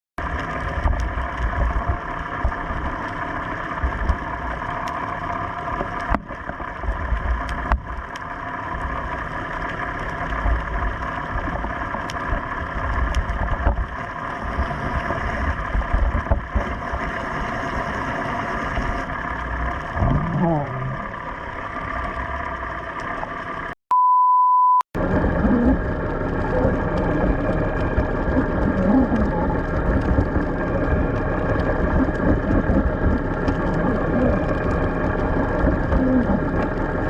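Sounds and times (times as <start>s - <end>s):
boat engine running: 0.2s - 23.8s, 25.0s - 37.0s
low rumbling gusts: 25.0s - 37.0s.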